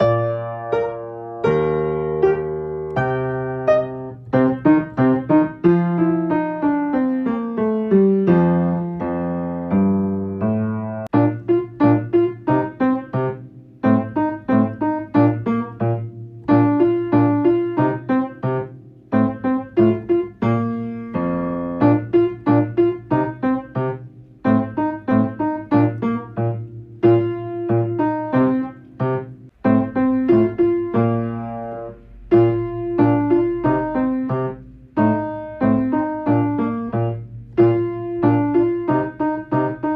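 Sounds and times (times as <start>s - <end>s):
solo piano playing: 0.0s - 39.9s.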